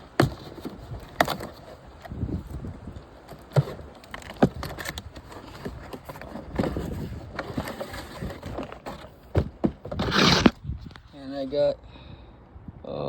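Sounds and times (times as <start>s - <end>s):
parts clattering: 2.9s - 11.0s.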